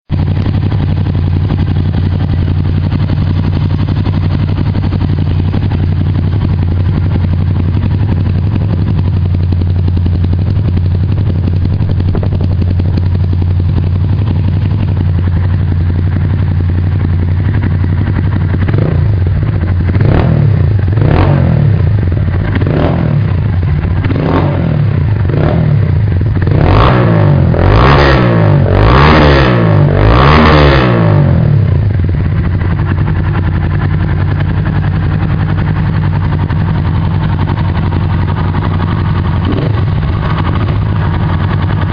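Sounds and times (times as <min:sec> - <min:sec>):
motorcycle engine idling: 0:00.1 - 0:41.9
engine revving with throttle blips: 0:19.9 - 0:23.3, 0:24.0 - 0:31.9, 0:39.3 - 0:40.9.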